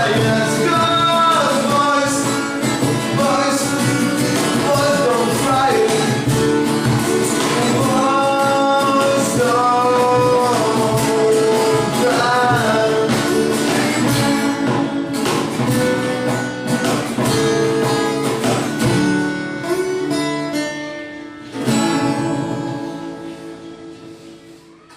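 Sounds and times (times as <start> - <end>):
person singing: 0.0 - 16.6, 21.6 - 24.9
acoustic bass: 0.0 - 24.7
acoustic guitars strumming: 0.0 - 24.9
cajon: 0.0 - 24.9.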